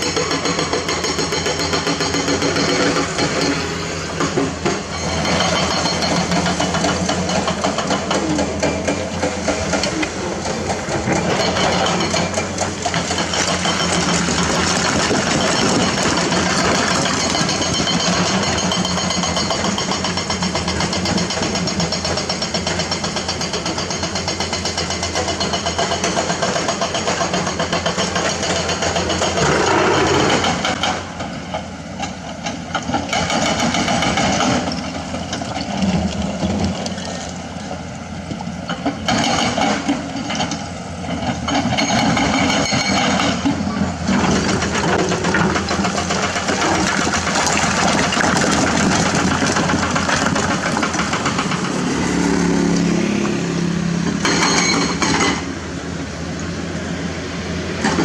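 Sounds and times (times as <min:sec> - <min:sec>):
rock breaker hammering: 0:00.0 - 0:29.6, 0:41.6 - 0:52.6
excavator engine running: 0:00.0 - 0:58.0.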